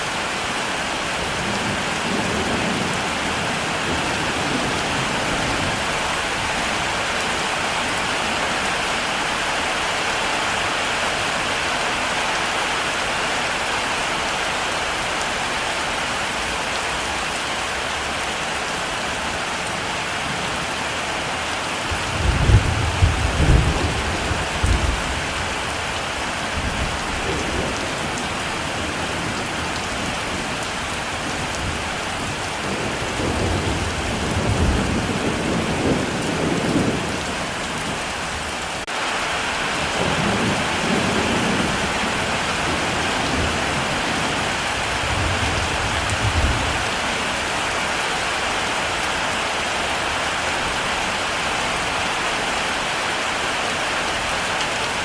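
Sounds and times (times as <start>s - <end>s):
heavy rain falling: 0.0s - 55.0s
thunder rumbling: 21.9s - 38.0s.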